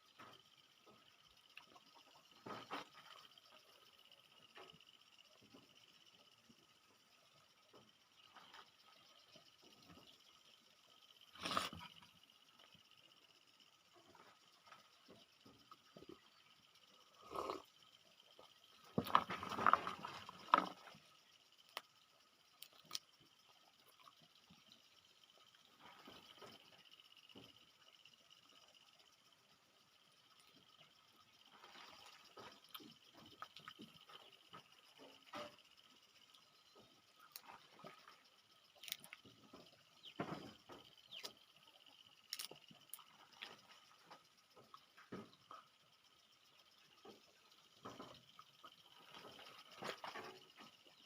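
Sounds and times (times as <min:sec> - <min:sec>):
peanuts being shelled and chewed: 0:17.1 - 0:17.7, 0:22.5 - 0:23.3, 0:38.7 - 0:41.4, 0:42.2 - 0:43.6
crackling and chewing on peanuts: 0:32.3 - 0:35.5, 0:38.7 - 0:45.6.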